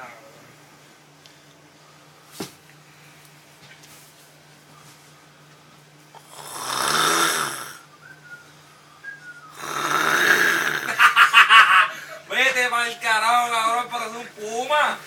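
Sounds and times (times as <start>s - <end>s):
person snoring loudly: 6.2s - 7.9s, 9.5s - 11.2s
faint short whistle: 7.8s - 9.6s.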